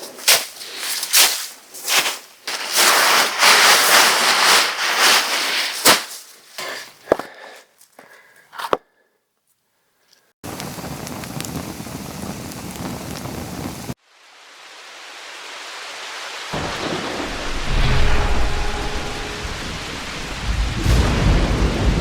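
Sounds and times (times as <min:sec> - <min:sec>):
rain hissing: 0:10.4 - 0:22.0
rolling thunder: 0:16.6 - 0:22.0.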